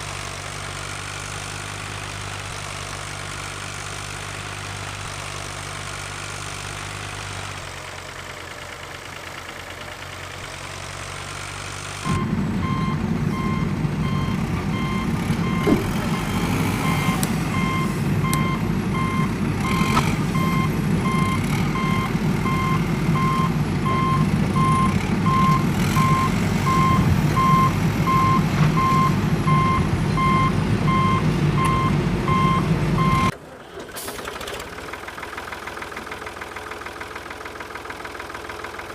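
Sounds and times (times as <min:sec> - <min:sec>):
engine rumble: 0:00.0 - 0:38.9
reversing alarm beeping: 0:12.1 - 0:33.4.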